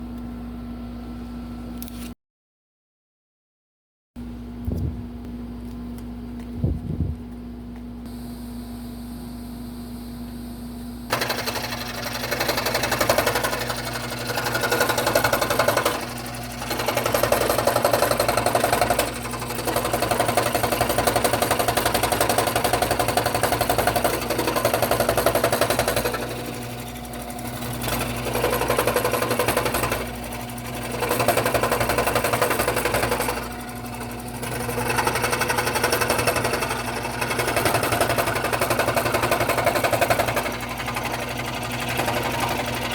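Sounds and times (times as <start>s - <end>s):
scroll saw cutting wood: 11.1s - 42.9s.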